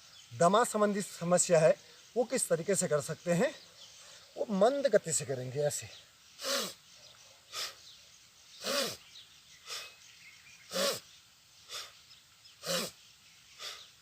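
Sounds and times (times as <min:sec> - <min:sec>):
forceful breathing through nose: 0:07.5 - 0:07.9, 0:09.6 - 0:10.0, 0:11.7 - 0:12.0, 0:13.6 - 0:13.9.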